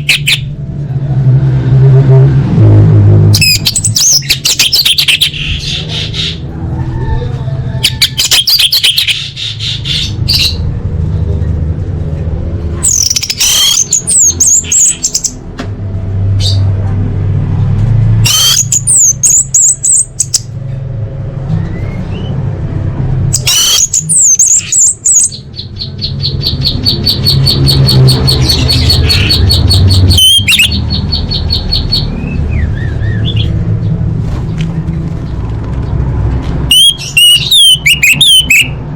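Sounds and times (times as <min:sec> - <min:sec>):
thrush singing whistled phrases: 0:28.3 - 0:33.5, 0:36.7 - 0:38.8.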